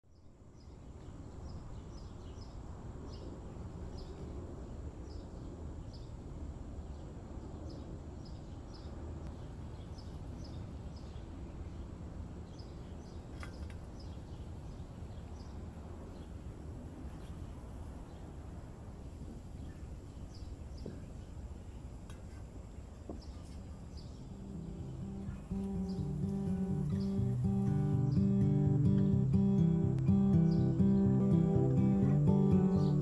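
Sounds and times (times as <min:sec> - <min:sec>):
small birds chirping: 0:00.1 - 0:33.0
low background rumble: 0:23.8 - 0:33.0.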